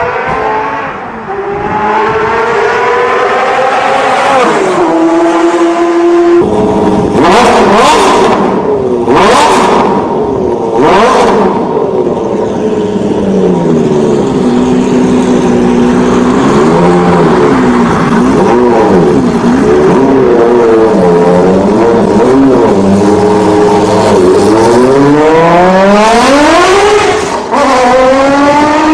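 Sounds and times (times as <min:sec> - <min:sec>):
car engines revving: 0:00.0 - 0:28.9.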